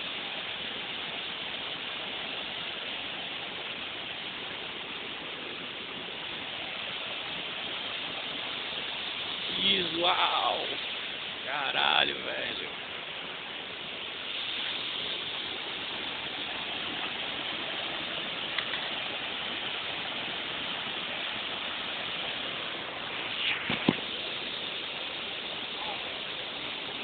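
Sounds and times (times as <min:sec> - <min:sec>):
waterfall rushing: 0:00.0 - 0:27.0
brief knock: 0:23.6 - 0:24.0.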